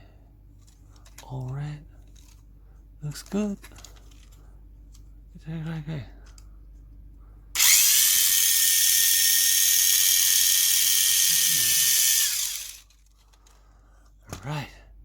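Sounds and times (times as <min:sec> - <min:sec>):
toy car motor whining: 0:07.6 - 0:13.0.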